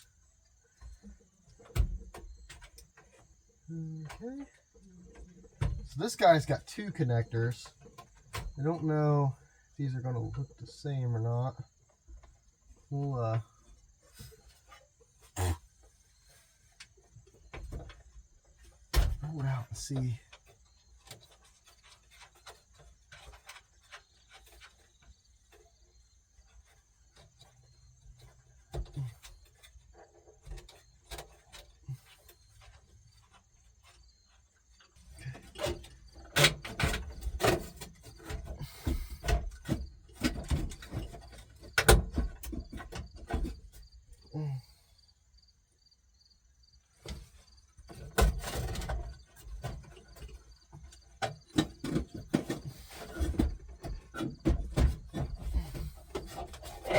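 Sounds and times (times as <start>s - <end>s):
hands working behind dashboard: 26.0s - 43.9s, 47.0s - 56.9s.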